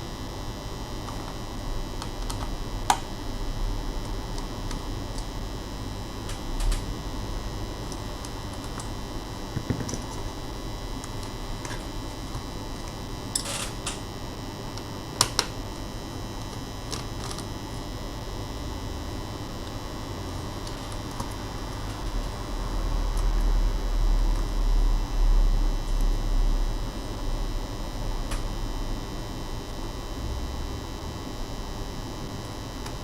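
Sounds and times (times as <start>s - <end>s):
steady background hum: 0.0s - 33.0s
small parts and tools clicking: 13.4s - 14.0s.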